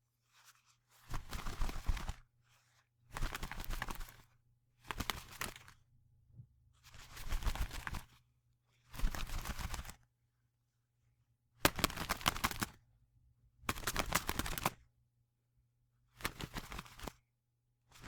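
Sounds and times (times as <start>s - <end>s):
bird wings fluttering: 1.1s - 2.2s, 3.2s - 4.2s, 4.9s - 5.8s, 7.0s - 8.1s, 9.0s - 10.0s, 11.6s - 12.8s, 13.7s - 14.8s, 16.2s - 17.1s.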